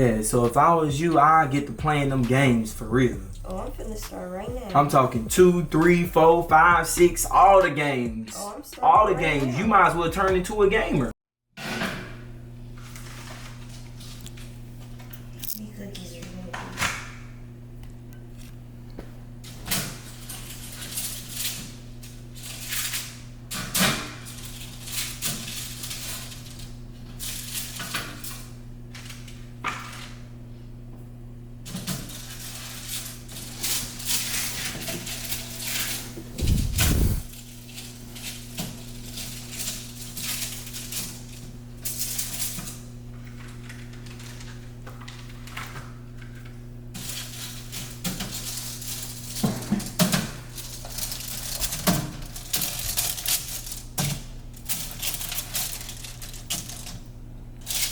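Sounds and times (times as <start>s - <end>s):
low electrical hum: 0.0s - 57.9s
heavy thump: 36.4s - 37.3s.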